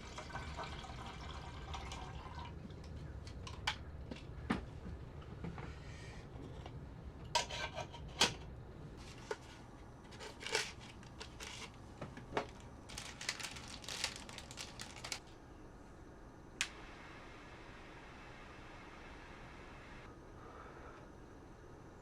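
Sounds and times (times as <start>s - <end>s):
small objects clicking and rustling: 10.1s - 11.8s, 12.4s - 15.2s.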